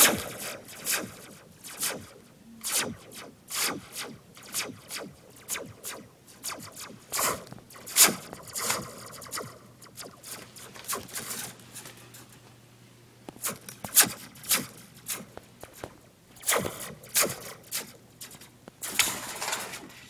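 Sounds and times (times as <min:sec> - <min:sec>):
metal spring coils clattering: 0:18.8 - 0:20.0.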